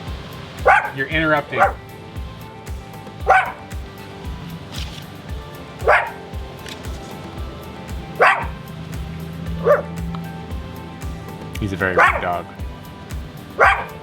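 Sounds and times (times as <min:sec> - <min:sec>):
background music with steady beat: 0:00.0 - 0:14.0
big dog barking: 0:00.6 - 0:01.8, 0:03.2 - 0:03.7, 0:05.8 - 0:06.3, 0:08.0 - 0:08.7, 0:09.6 - 0:10.0, 0:11.8 - 0:12.4, 0:13.5 - 0:14.0.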